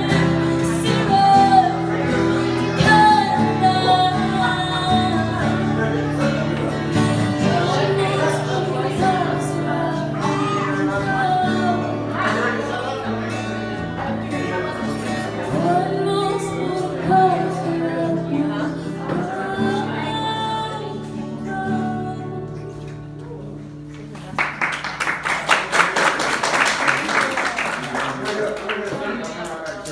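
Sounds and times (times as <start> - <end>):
person singing: 0.0 - 13.0, 15.2 - 22.9
guitar chords: 0.0 - 24.2.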